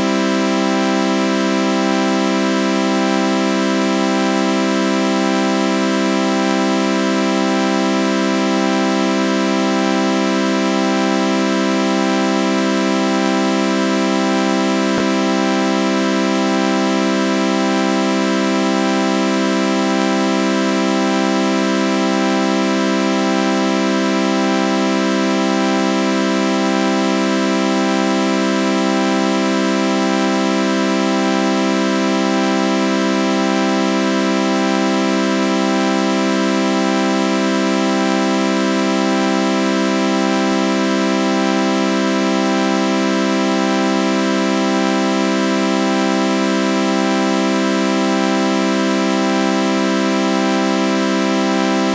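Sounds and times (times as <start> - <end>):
buzzy synthesizer chord drone: 13.5 - 18.4.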